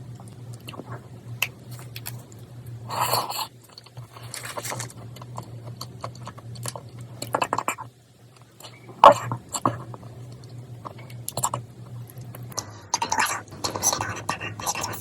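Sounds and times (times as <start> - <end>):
low steady hum: 0.0 - 15.0
person chewing food: 0.1 - 14.0.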